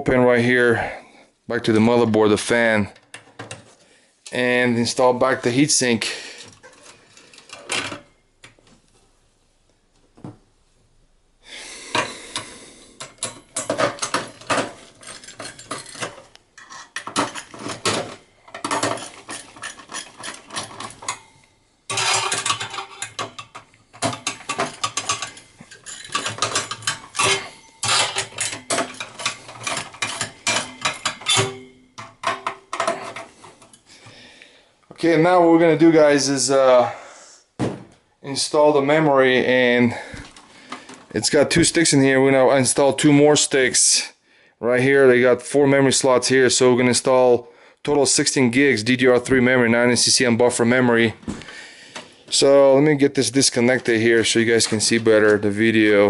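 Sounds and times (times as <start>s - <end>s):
heatsink clicking and rattling: 21.9s - 33.3s.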